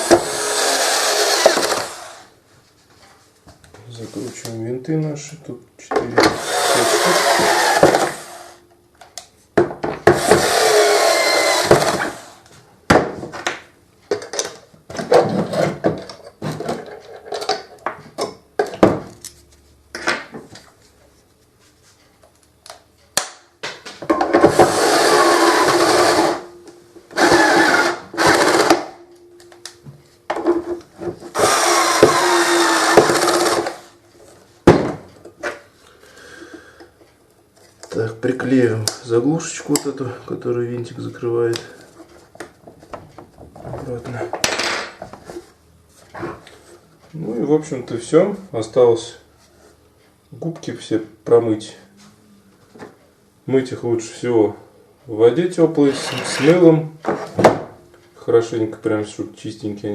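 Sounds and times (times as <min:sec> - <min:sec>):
electric screwdriver whirring: 0:00.0 - 0:02.3, 0:06.3 - 0:08.6, 0:10.2 - 0:12.4, 0:24.5 - 0:26.4, 0:27.2 - 0:28.8, 0:31.4 - 0:33.9.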